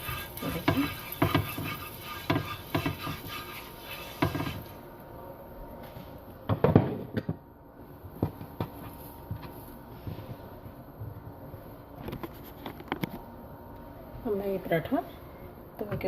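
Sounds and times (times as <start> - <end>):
utensil scraping a hot griddle: 0.0 - 4.8.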